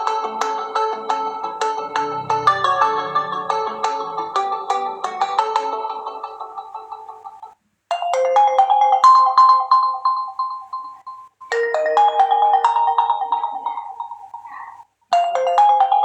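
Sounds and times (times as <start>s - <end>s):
bell-like phone ringtone: 9.5s - 16.0s.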